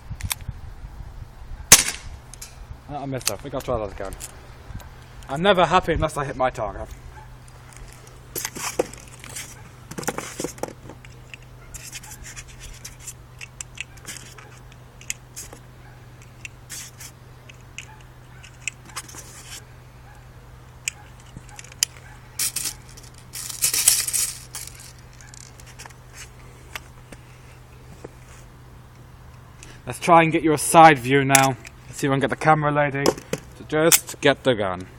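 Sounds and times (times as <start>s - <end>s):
low steady hum: 0.0s - 34.9s
metallic clicks and scrapes: 1.9s - 2.6s, 6.9s - 15.6s, 16.2s - 19.6s, 20.7s - 27.6s.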